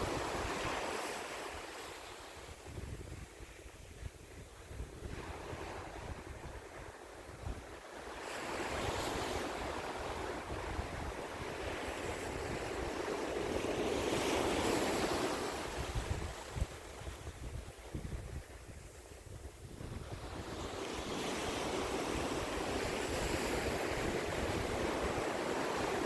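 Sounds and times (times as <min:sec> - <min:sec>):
wind buffeting microphone: 0:00.0 - 0:01.4, 0:02.4 - 0:07.8, 0:08.5 - 0:26.0
waves breaking on shore: 0:00.0 - 0:26.0.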